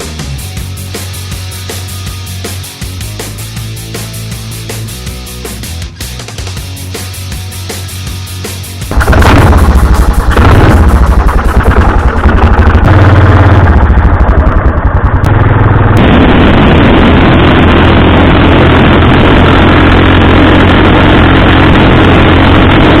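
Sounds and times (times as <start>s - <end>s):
small engine running: 7.1s - 23.0s.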